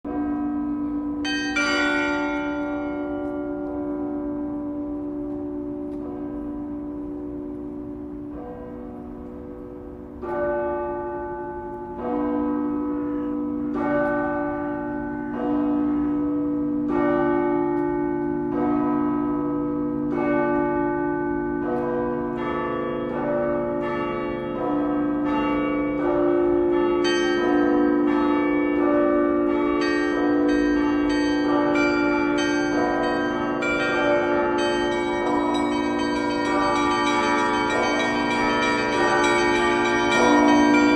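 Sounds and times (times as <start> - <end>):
deep bells humming: 26.4 - 40.9
high small bells ringing: 29.8 - 40.9
middle bells striking: 29.8 - 40.9.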